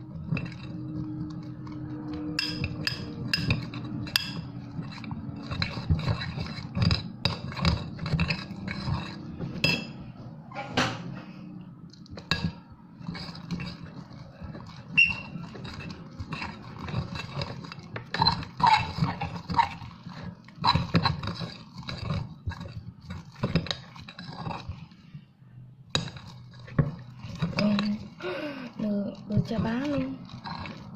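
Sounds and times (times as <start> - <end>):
sticky slime squelches: 27.2 - 30.9.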